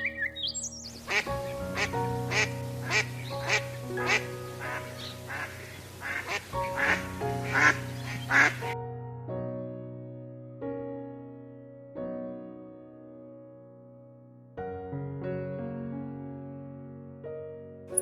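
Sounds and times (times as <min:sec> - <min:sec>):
background music: 0:00.0 - 0:15.2, 0:17.5 - 0:18.0
duck quacking: 0:01.1 - 0:08.7.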